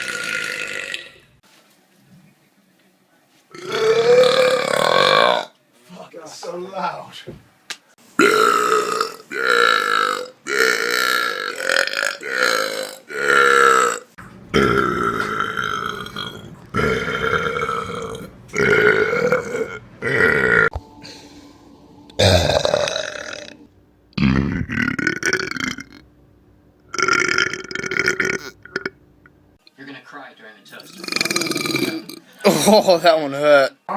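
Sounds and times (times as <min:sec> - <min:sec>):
person burping: 0:00.0 - 0:01.2, 0:03.5 - 0:05.4, 0:08.2 - 0:20.8, 0:22.2 - 0:23.6, 0:24.2 - 0:26.0, 0:26.9 - 0:29.0, 0:31.0 - 0:32.8.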